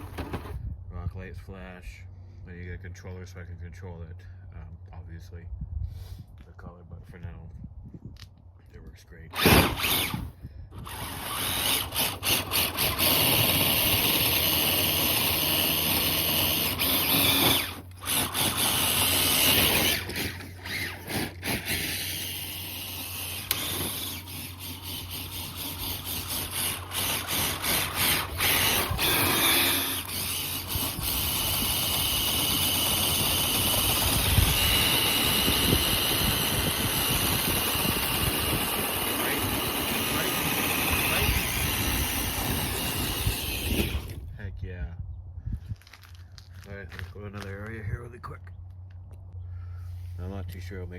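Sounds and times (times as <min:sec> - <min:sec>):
electric motor whining: 0:09.4 - 0:44.3.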